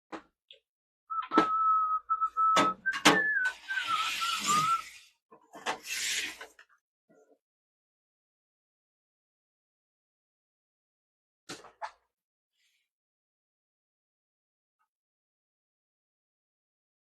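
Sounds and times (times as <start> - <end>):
person whistling: 1.1 - 5.0.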